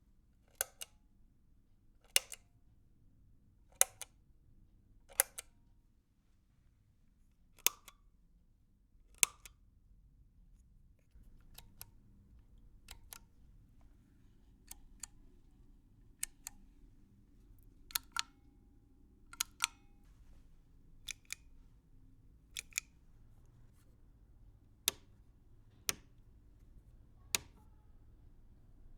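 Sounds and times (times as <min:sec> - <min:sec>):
switches clicking on and off: 0:11.2 - 0:14.0, 0:14.6 - 0:16.8, 0:17.4 - 0:18.5, 0:19.2 - 0:20.1, 0:21.0 - 0:21.7, 0:22.5 - 0:23.8, 0:24.6 - 0:27.7.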